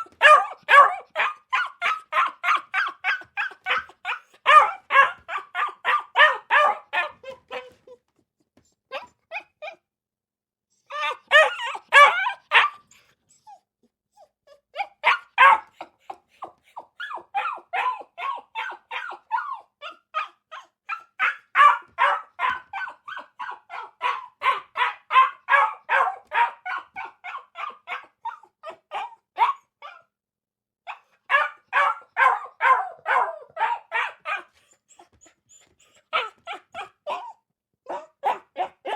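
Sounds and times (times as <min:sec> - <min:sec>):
dog barking: 0:00.0 - 0:07.8, 0:11.0 - 0:12.8, 0:14.8 - 0:15.9, 0:17.0 - 0:30.0, 0:30.9 - 0:34.5, 0:36.1 - 0:38.9.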